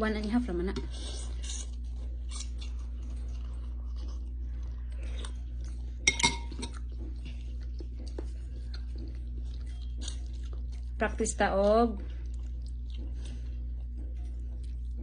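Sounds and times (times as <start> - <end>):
steady low hum: 0.0 - 15.0
chewing with wet mouth clicks: 1.4 - 15.0
utensil clinking against bowl: 6.0 - 6.8.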